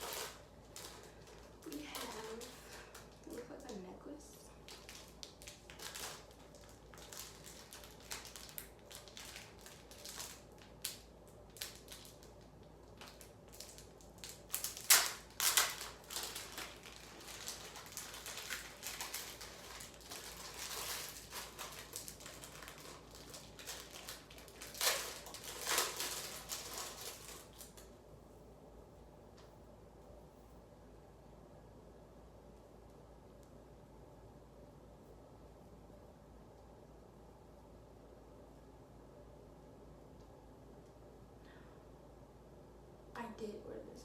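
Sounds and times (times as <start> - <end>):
packaging rustling and crinkling: 0.0 - 28.0.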